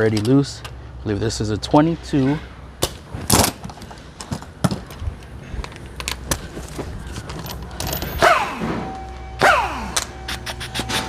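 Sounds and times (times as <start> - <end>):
metal tools clicking and knocking: 7.1 - 8.2.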